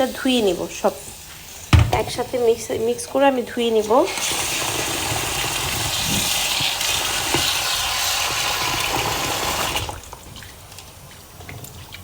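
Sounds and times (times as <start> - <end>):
tap running into a pot: 1.7 - 2.9, 4.2 - 9.8
faint water trickles: 9.8 - 12.0.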